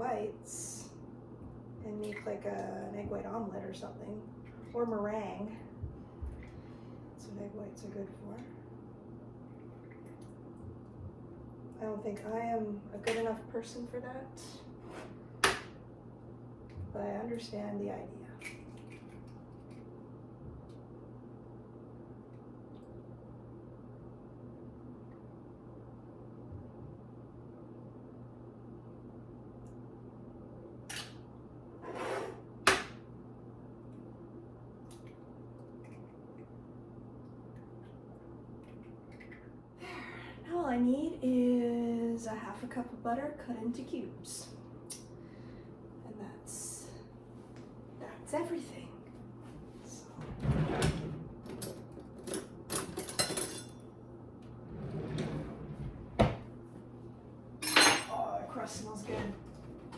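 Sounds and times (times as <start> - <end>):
steady low hum: 0.0 - 59.9
scrape: 14.8 - 15.2, 31.8 - 32.4.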